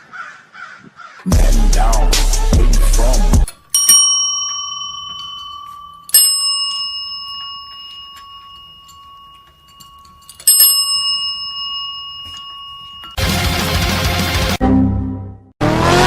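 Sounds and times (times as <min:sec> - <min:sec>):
small metal bell ringing: 0:03.5 - 0:13.4.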